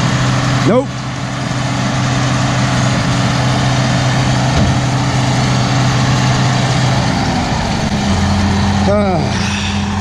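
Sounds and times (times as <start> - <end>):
tractor engine running: 0.0 - 10.0.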